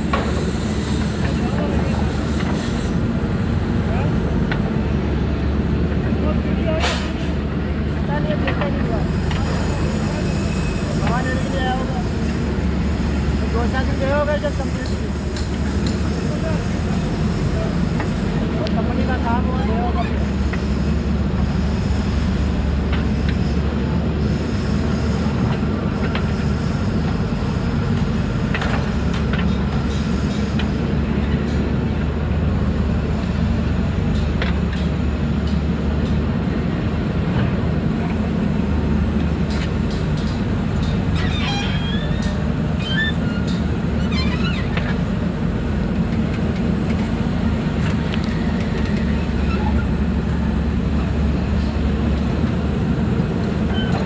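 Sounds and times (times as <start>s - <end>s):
diesel engine running under load: 0.0s - 54.0s
short high squeaks: 41.1s - 45.1s, 48.3s - 50.0s, 53.7s - 54.0s.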